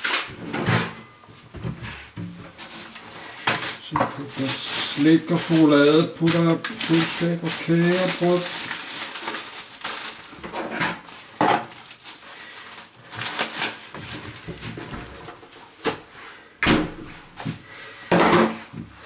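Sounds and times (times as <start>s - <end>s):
packaging rustling: 2.5s - 16.1s.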